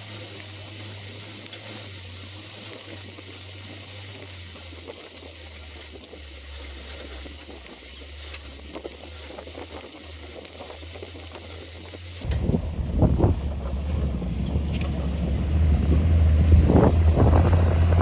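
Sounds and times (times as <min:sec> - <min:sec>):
car engine running: 0:08.3 - 0:18.0
light crackling: 0:11.9 - 0:18.0
wind hiss: 0:12.2 - 0:18.0.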